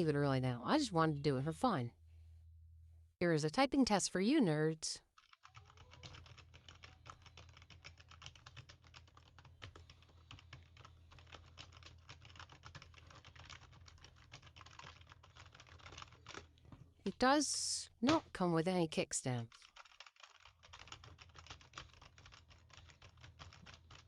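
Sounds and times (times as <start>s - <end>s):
typing on computer keyboard: 5.2s - 16.6s, 19.5s - 24.0s.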